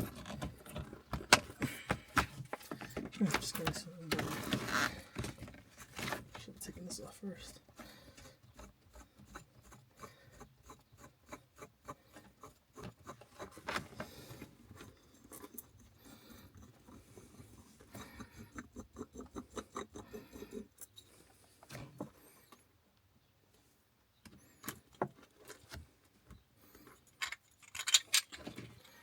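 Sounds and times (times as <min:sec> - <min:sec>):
leather and plastic rubbing: 0:00.0 - 0:06.6.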